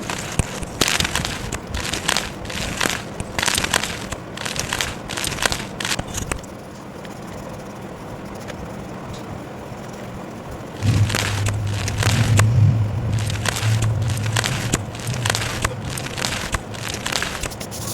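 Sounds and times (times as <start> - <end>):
chalk crunching: 0.0 - 6.2, 10.8 - 17.9
steady low hiss: 10.6 - 17.9.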